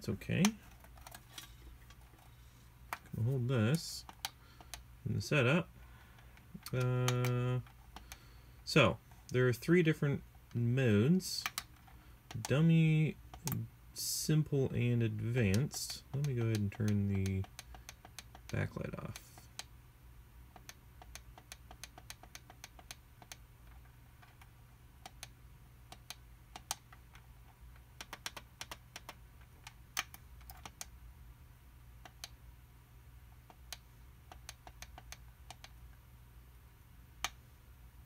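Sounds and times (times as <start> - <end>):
plastic push buttons clicking: 27.8 - 30.9.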